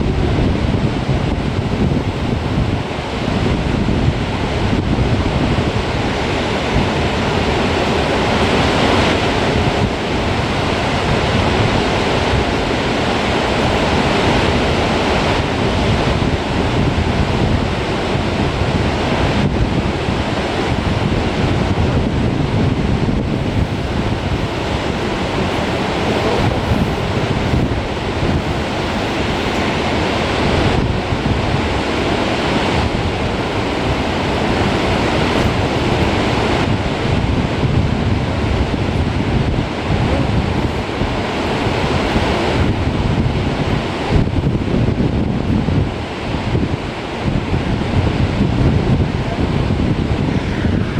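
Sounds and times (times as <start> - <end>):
wind buffeting microphone: 0.0 - 50.9
waterfall rushing: 1.4 - 44.8.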